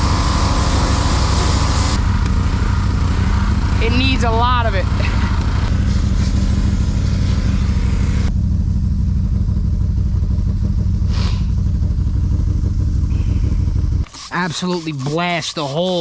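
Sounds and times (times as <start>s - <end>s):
pressure washer engine running: 0.0s - 16.0s
hiss: 11.0s - 11.6s.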